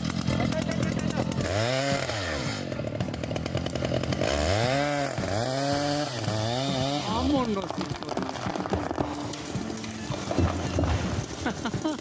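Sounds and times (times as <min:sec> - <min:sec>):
chainsaw engine revving: 0:00.0 - 0:12.0.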